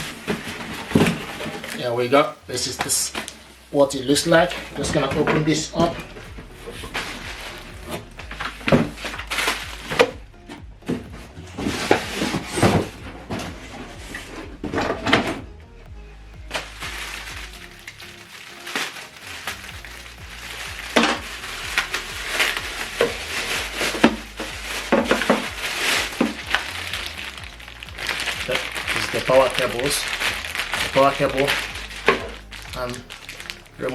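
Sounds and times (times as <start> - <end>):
packaging scraping and rustling: 0.0 - 2.0, 16.5 - 33.9
background music: 0.0 - 33.9.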